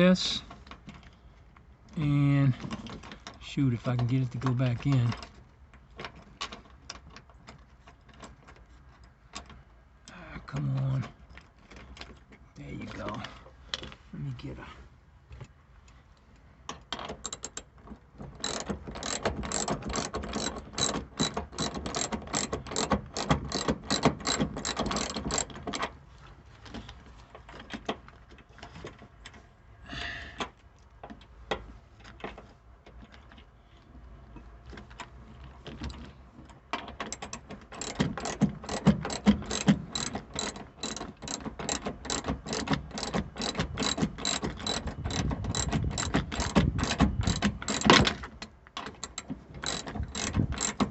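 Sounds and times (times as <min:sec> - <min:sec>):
ratchet wrench clicking rapidly: 0:18.4 - 0:25.5, 0:37.8 - 0:48.0, 0:49.1 - 0:50.8.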